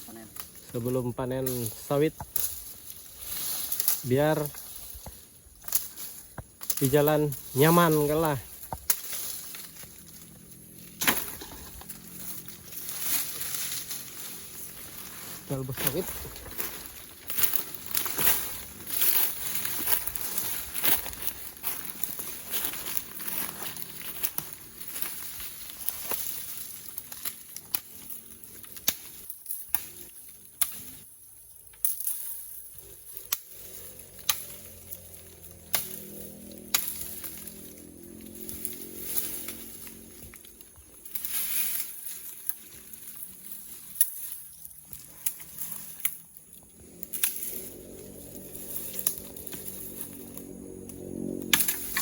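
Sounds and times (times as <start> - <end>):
faint ticks and rustles: 0.0 - 52.0
high insect drone: 0.0 - 52.0
sharp cracks of breaking wood: 5.6 - 14.7, 15.9 - 31.0, 33.2 - 46.2.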